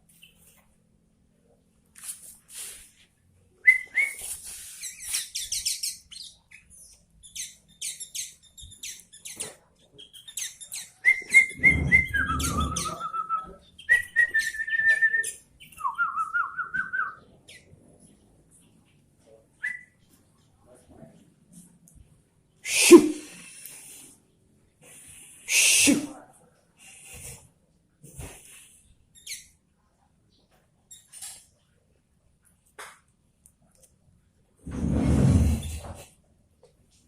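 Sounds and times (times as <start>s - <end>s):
bird singing whistled notes: 10.2s - 17.2s.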